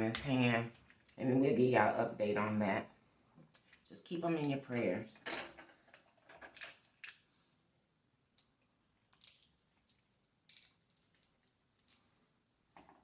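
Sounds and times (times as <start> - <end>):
shells cracking and snapping: 6.5 - 7.2, 8.4 - 12.1.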